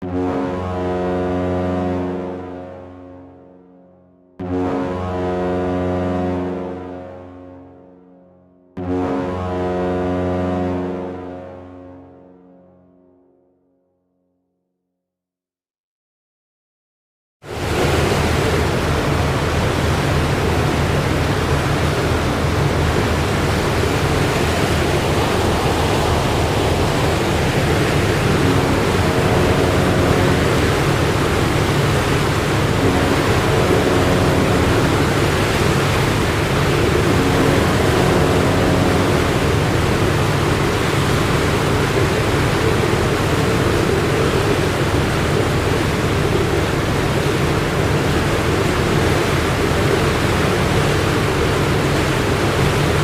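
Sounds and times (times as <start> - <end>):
ship engine droning: 0.0 - 3.8, 4.4 - 13.3, 17.5 - 53.0
rushing water: 17.5 - 53.0.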